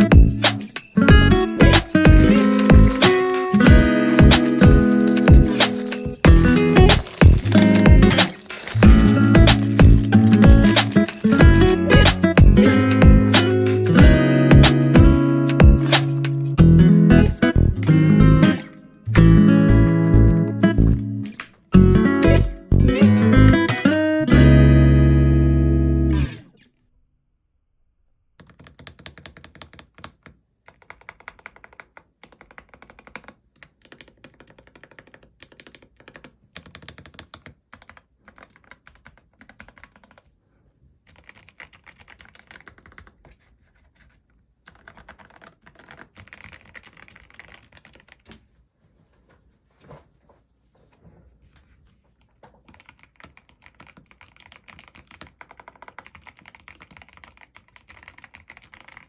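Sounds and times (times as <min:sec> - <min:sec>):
mechanical keyboard typing: 0:00.0 - 0:16.5, 0:28.4 - 0:40.3, 0:41.1 - 0:43.9, 0:44.7 - 0:48.3, 0:52.7 - 0:59.0.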